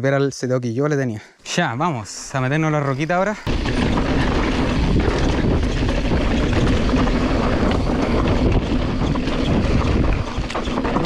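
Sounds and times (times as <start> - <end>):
wind rushing over microphone: 3.0 - 11.0
bike tyres knocking over rocks: 3.5 - 11.0.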